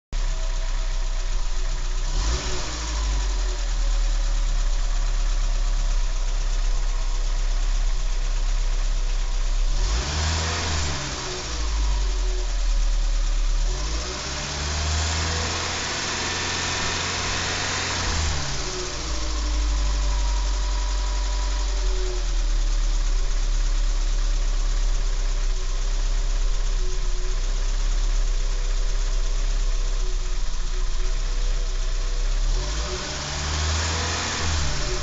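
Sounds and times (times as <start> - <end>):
car engine revving: 1.3 - 3.9, 9.6 - 12.8, 13.5 - 23.2, 26.6 - 35.0.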